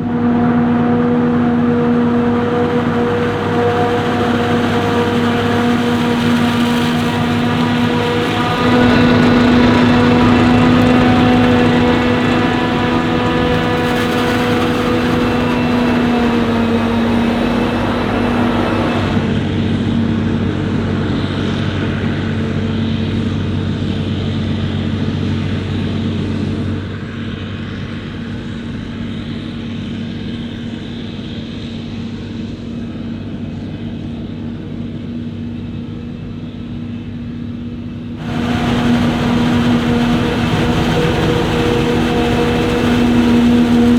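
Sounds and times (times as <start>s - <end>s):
diesel farm machinery running: 0.0s - 19.8s, 38.1s - 43.9s
high whine: 0.6s - 19.3s, 38.2s - 43.9s.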